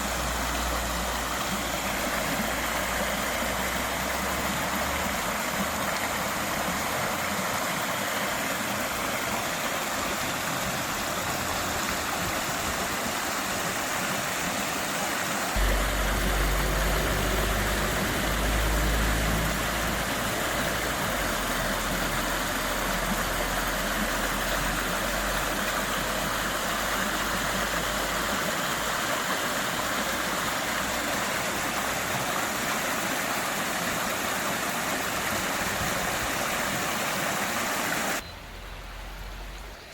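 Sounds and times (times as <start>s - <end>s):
water rushing: 0.0s - 38.2s
low rumble: 15.6s - 21.8s.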